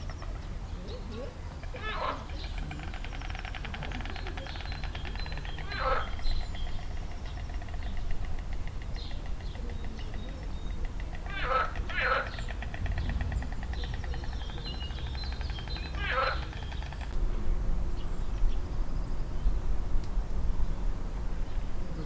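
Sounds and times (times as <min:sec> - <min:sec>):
frogs croaking: 0:00.0 - 0:17.2
steady low rumble: 0:00.0 - 0:22.0.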